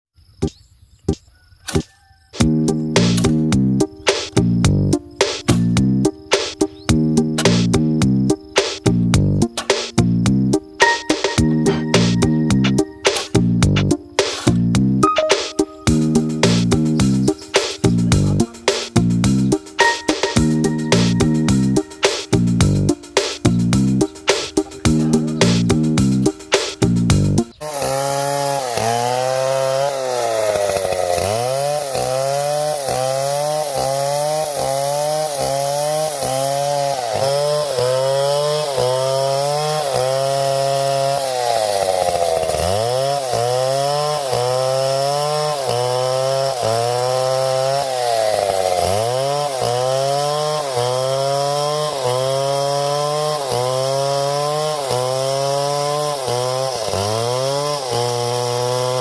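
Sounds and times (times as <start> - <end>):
chainsaw running: 2.4 - 8.4, 9.0 - 59.0.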